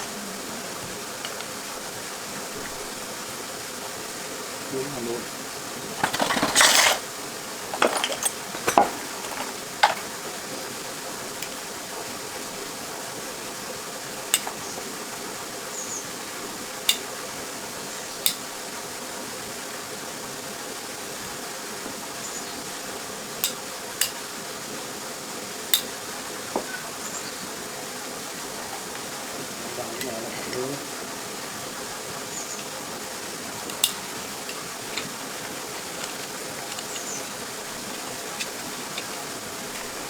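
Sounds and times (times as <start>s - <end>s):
steady hiss: 0.0s - 40.0s
metallic clinks and knocks: 6.0s - 7.0s, 7.7s - 10.5s.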